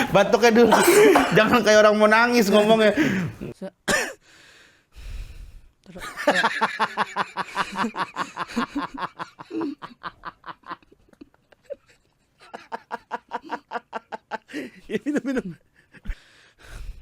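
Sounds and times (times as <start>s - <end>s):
people laughing hard: 0.0s - 3.5s, 6.0s - 15.6s.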